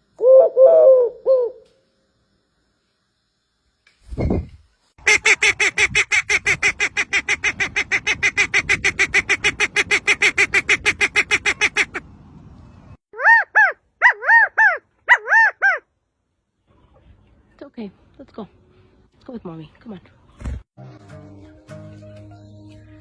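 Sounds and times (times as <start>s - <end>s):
bird calling: 13.2s - 15.9s.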